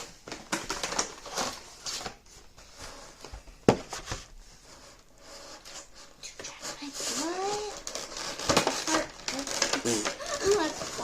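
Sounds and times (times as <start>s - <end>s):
packaging rustling: 0.0s - 4.4s, 7.1s - 11.0s.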